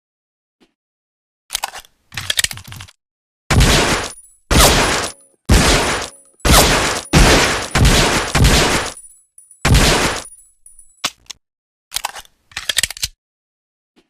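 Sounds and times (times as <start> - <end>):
pistol shots echoing: 3.5 - 9.1, 9.7 - 10.3.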